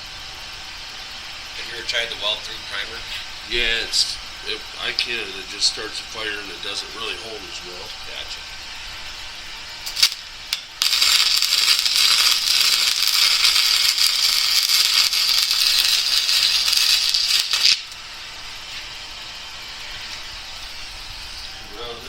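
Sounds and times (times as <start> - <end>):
welder arc crackling on steel: 0.0 - 22.0.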